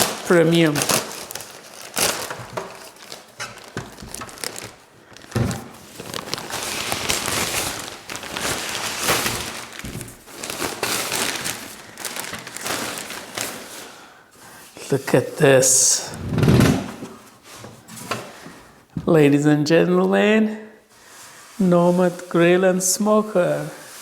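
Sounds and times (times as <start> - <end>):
packaging rustling and crinkling: 0.0 - 14.8.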